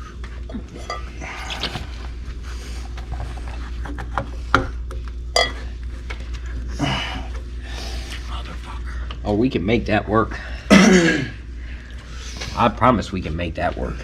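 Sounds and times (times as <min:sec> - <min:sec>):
rubber pipes rubbing and scraping: 0:00.0 - 0:04.5.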